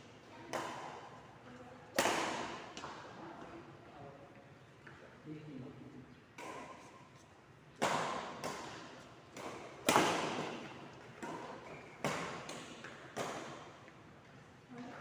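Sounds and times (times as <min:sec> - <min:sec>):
ball hits echoing in a court: 0:02.0 - 0:03.1, 0:07.8 - 0:13.9.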